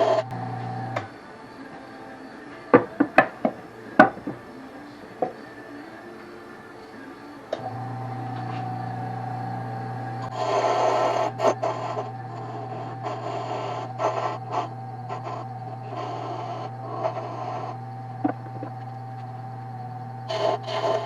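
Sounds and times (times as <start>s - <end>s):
wood lathe motor hum: 0.0s - 21.0s
turning tool scraping wood: 10.2s - 19.5s, 20.3s - 21.0s.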